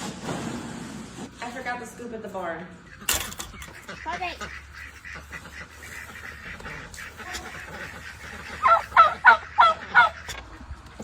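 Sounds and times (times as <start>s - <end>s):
goose honking: 2.8s - 11.0s.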